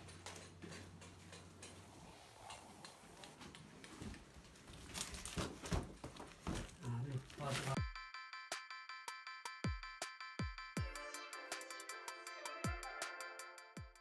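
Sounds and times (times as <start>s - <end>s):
faint rustling: 0.0s - 7.8s.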